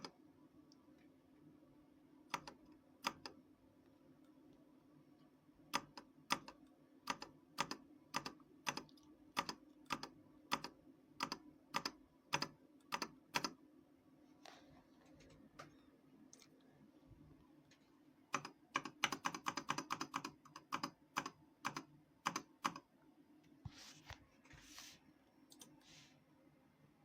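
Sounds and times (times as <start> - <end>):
faint low hum: 0.0 - 27.0
mechanical keyboard key presses: 18.4 - 22.8.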